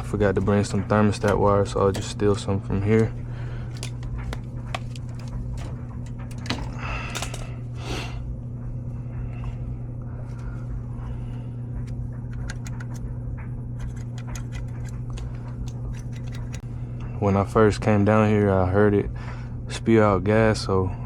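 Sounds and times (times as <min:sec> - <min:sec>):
tools clicking and scraping: 0:00.0 - 0:02.2, 0:02.8 - 0:07.6, 0:11.8 - 0:13.0, 0:13.8 - 0:16.6
low hum: 0:00.0 - 0:21.0.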